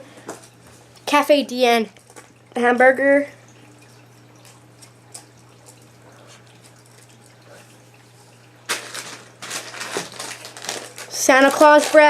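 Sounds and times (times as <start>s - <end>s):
plastic packaging crinkling: 8.7s - 12.0s.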